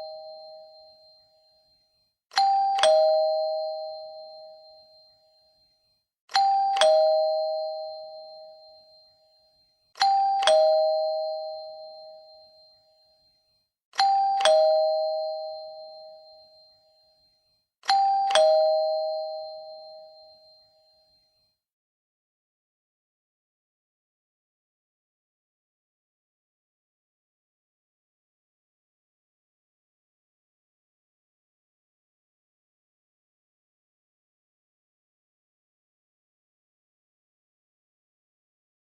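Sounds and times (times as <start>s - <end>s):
two-tone doorbell chime: 0.0s - 21.6s.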